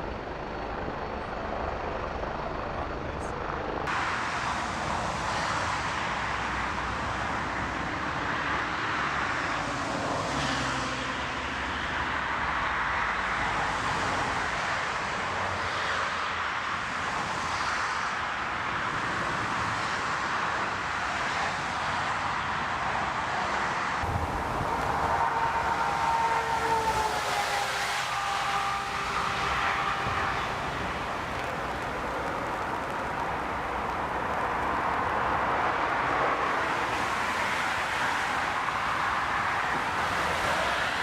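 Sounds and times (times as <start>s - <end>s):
jet engines rushing: 24.0s - 41.0s.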